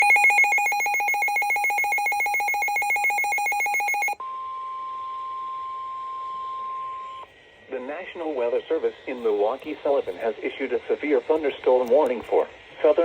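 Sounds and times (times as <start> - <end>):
steady alarm tone: 0.0 - 4.2.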